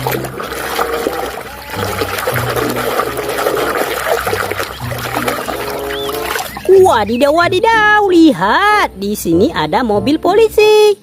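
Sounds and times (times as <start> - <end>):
water splashing and sloshing: 0.0 - 7.9.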